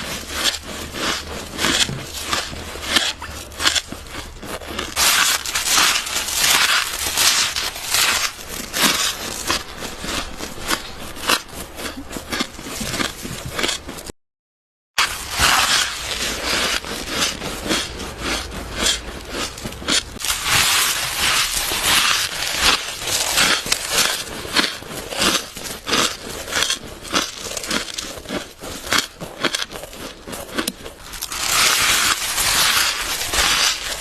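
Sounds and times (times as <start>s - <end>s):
chewing crunchy ice: 0.0s - 14.1s, 15.0s - 34.0s.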